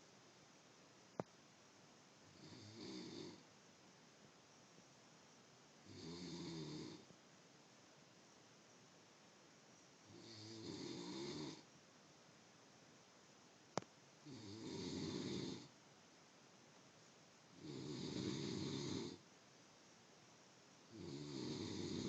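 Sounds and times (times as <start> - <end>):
quiet breathing: 2.2 - 5.0, 5.7 - 7.3, 9.7 - 11.8, 13.7 - 15.9, 17.0 - 22.0
person snoring: 2.3 - 3.4, 5.9 - 7.1, 10.1 - 11.7, 14.2 - 15.7, 17.6 - 19.2, 20.9 - 22.0.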